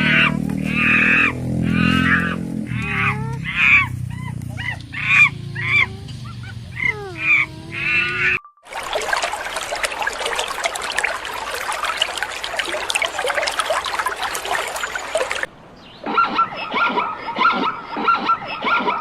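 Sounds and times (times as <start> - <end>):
water trickling and splashing: 8.6 - 16.0.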